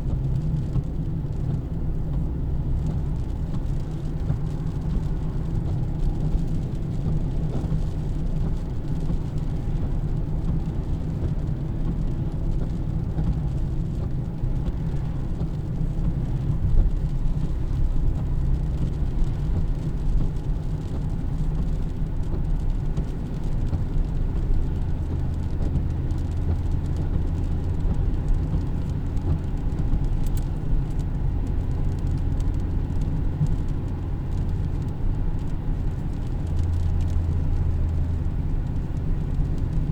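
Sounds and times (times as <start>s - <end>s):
car engine and tyre rumble: 0.0s - 39.9s.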